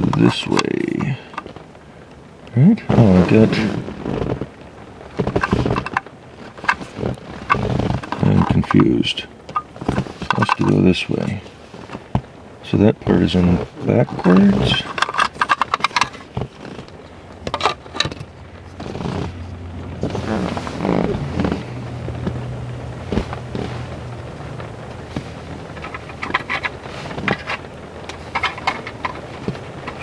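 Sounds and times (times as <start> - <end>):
plastic parts clicking and scraping: 0.0 - 1.6, 5.1 - 12.3, 13.3 - 20.2, 24.6 - 30.0
steady low hum: 0.0 - 30.0.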